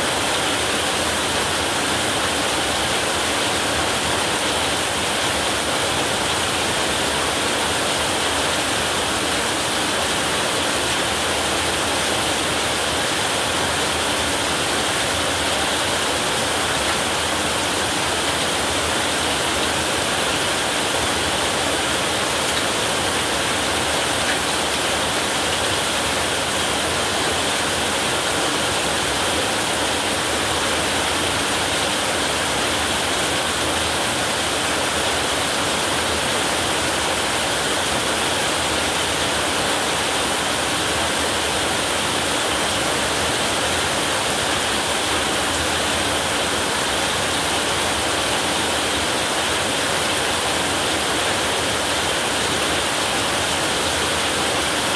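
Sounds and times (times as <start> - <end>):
heavy rain on a roof: 0.0 - 54.9.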